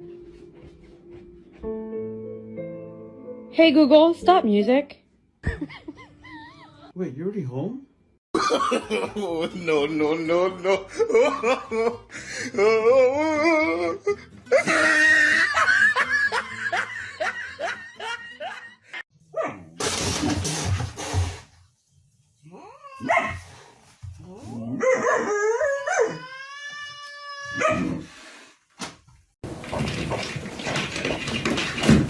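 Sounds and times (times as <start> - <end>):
pet howling and yelping: 24.7 - 28.0.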